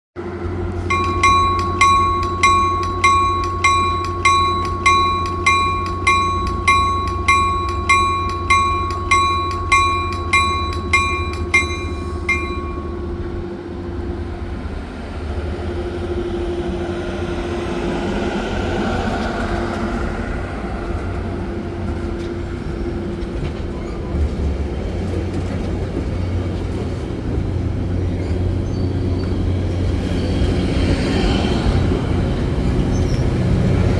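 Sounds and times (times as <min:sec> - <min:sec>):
train rumble and hum: 0:00.2 - 0:33.9
train bell ringing: 0:00.3 - 0:14.3.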